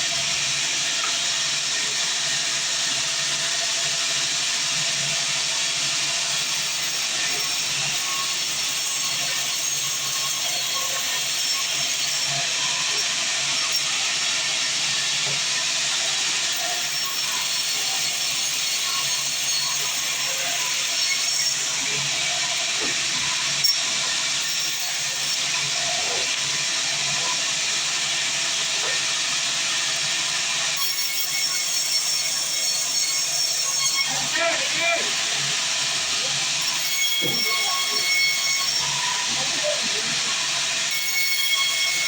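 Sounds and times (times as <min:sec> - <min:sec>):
band saw blade cutting log: 0:36.5 - 0:40.2.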